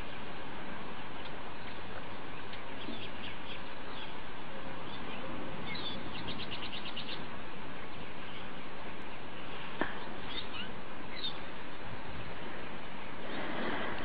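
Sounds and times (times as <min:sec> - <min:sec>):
outdoor hiss: 0:00.0 - 0:14.0
small birds chirping: 0:01.0 - 0:13.7
bird trill: 0:04.9 - 0:07.3, 0:10.2 - 0:11.4.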